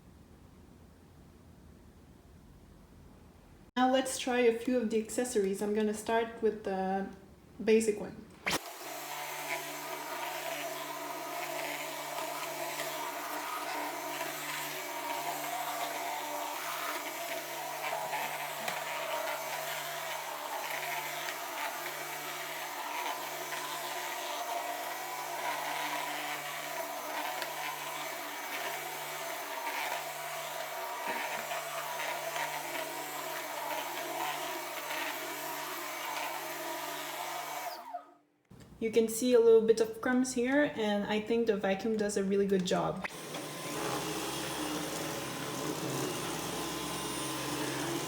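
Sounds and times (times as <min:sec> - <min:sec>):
vacuum cleaner running: 0:08.4 - 0:38.1, 0:43.0 - 0:48.0.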